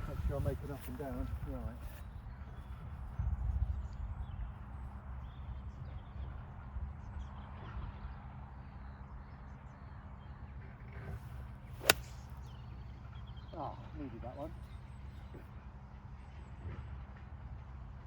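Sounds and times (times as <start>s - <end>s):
golf club striking ball: 11.8s - 12.6s.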